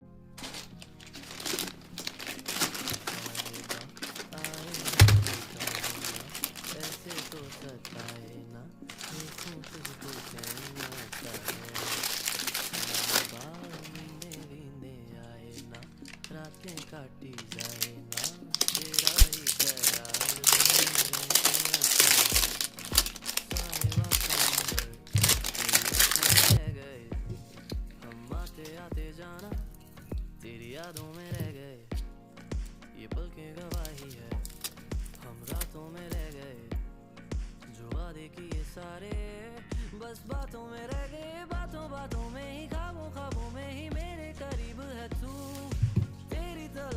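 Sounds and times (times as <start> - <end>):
packaging crinkling: 0.4 - 14.5, 15.6 - 26.7, 30.6 - 31.6, 33.6 - 36.4
song with bass beat: 0.4 - 46.9.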